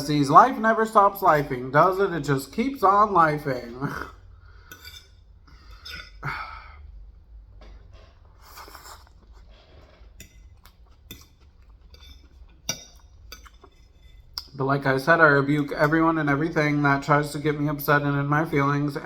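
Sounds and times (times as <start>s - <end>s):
dishes and cutlery clinking: 4.7s - 6.2s, 9.6s - 14.4s
chewing fried chicken: 8.3s - 13.7s.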